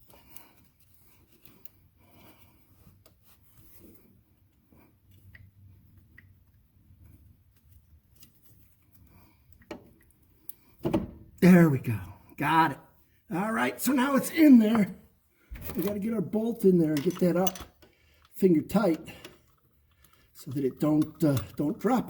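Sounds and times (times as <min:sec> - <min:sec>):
metal clicks and scraping: 0:16.8 - 0:21.8.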